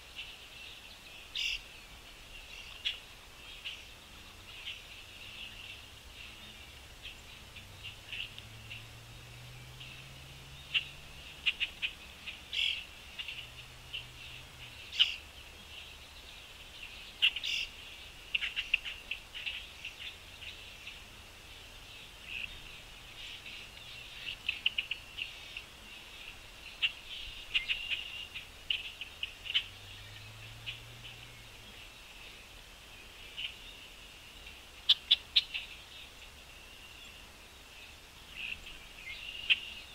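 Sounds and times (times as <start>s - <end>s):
birds chirping: 0.0s - 39.9s.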